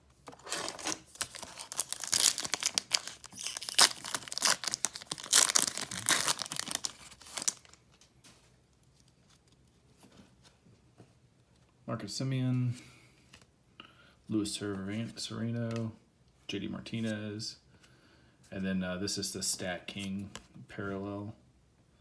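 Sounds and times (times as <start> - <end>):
wrapper tearing and crinkling: 0.3 - 7.8.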